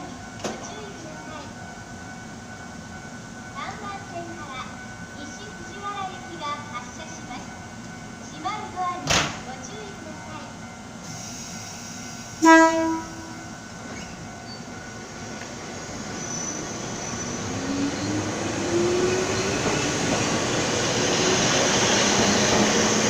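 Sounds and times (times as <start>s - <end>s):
train running noise: 0.0s - 23.0s
train horn blast: 12.4s - 13.5s.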